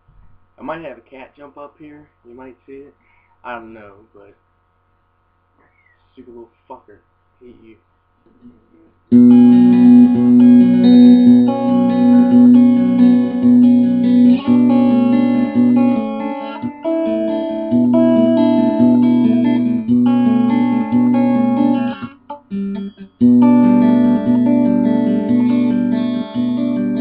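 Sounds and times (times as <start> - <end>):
guitar notes and chords: 9.1 - 27.0.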